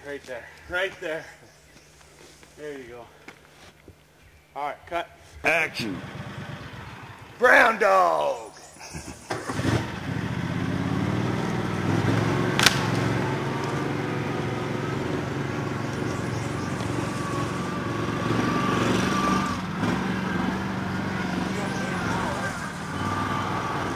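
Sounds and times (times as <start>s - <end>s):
vehicle engine running: 5.5s - 7.8s, 8.8s - 23.9s
sharp click: 12.6s - 13.0s.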